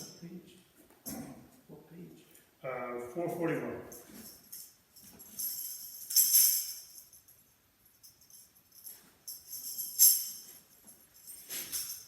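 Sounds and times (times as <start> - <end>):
tambourine jingles: 3.9 - 12.0.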